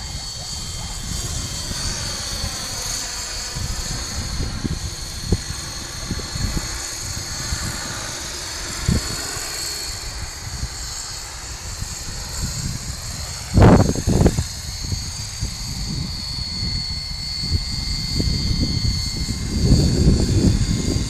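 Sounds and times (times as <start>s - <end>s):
helicopter rotor noise: 0.0s - 21.0s
model helicopter motor whine: 0.0s - 21.0s.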